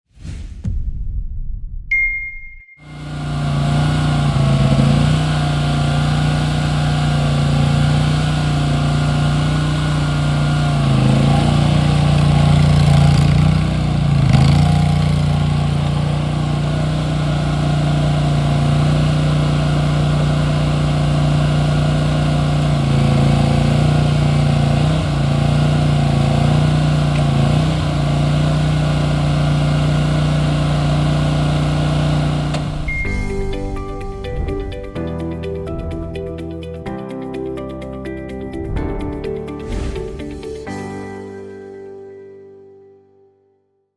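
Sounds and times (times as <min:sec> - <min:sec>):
skid steer engine running: 0:02.9 - 0:33.7.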